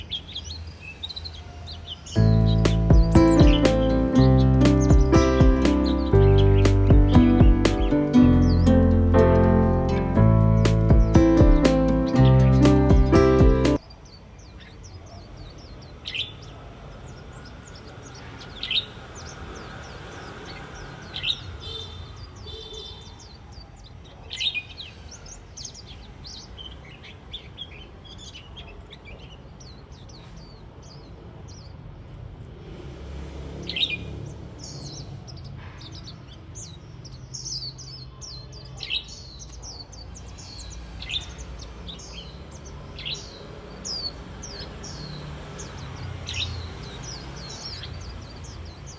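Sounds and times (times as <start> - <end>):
birds chirping: 0.0 - 13.8, 38.6 - 48.9.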